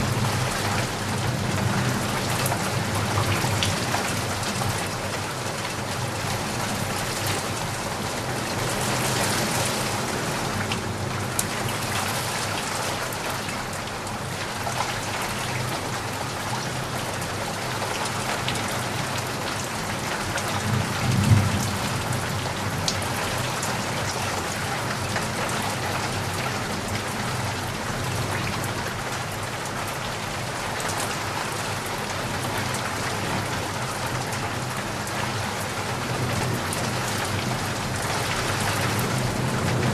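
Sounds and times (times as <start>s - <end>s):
heavy rain: 0.0s - 39.9s
low rumble of thunder: 20.6s - 24.1s.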